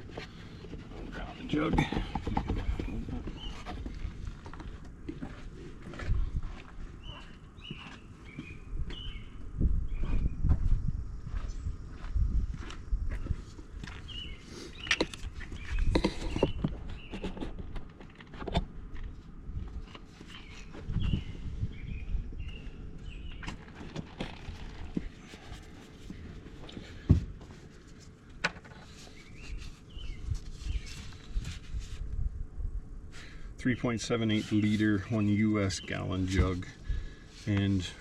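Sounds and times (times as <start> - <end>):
footsteps: 0.0 - 9.0, 10.0 - 14.1
birds chirping: 0.0 - 17.9, 19.8 - 31.6, 33.2 - 38.0.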